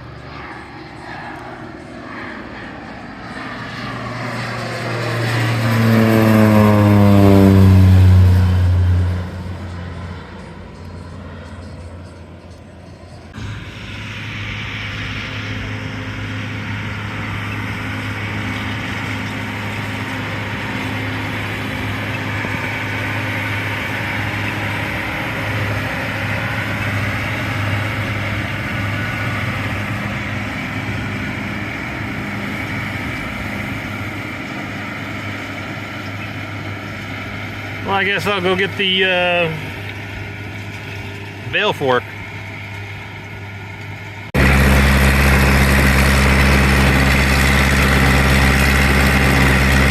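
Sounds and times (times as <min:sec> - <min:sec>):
tractor engine running: 0:03.7 - 0:49.9
broad rushing noise: 0:13.2 - 0:49.9.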